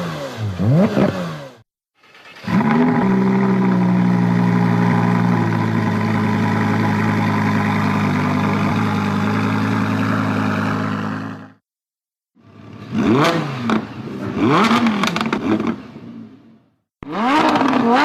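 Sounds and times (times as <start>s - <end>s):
motorcycle engine idling: 3.1s - 11.6s.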